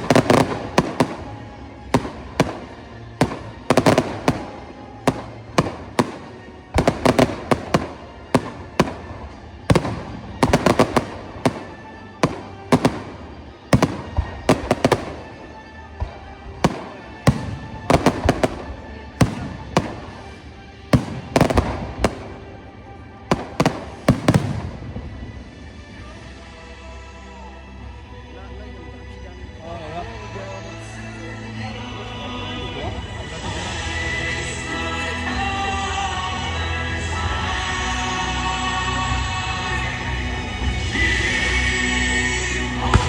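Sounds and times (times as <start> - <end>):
fireworks bangs and crackling: 0.0 - 25.6, 42.6 - 43.0
music playing: 0.0 - 43.0.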